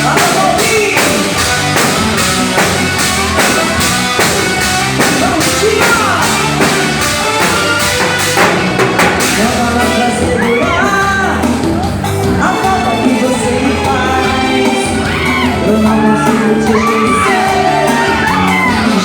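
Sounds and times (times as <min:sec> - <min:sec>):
steady drum beat: 0:00.0 - 0:19.0
woman singing: 0:09.3 - 0:11.6, 0:12.2 - 0:19.0.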